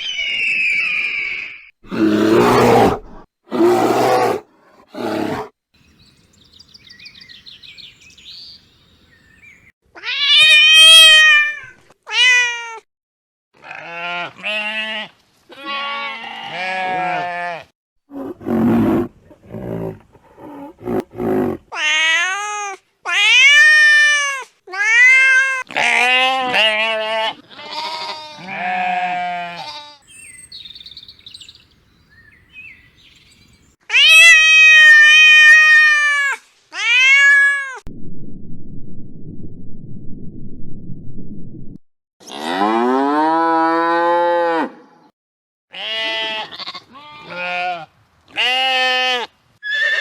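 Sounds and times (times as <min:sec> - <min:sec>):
high-pitched animal calls: 0:00.0 - 0:01.7
low grunting pulses: 0:18.1 - 0:21.6
low rumbling noise: 0:37.9 - 0:41.8.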